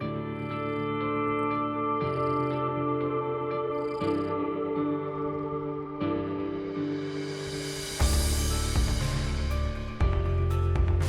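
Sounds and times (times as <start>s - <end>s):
light percussion hits: 6.8s - 11.0s
deep held bass: 6.9s - 11.0s.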